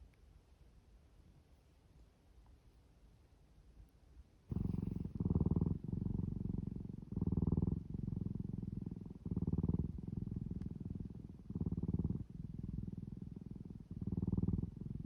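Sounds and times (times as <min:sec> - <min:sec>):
cat purring: 0:04.5 - 0:15.0.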